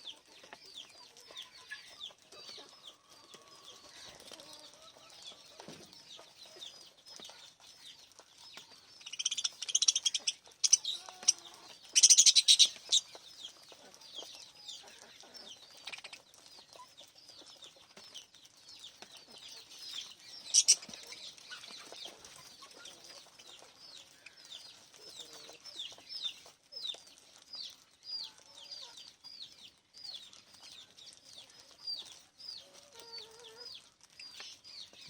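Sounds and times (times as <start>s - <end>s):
parrots chirping: 9.0s - 13.1s, 19.8s - 22.0s.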